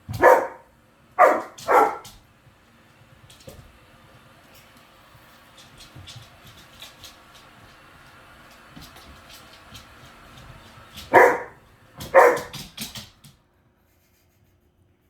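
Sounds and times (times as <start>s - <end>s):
dog barking: 0.1s - 2.2s, 11.1s - 12.7s.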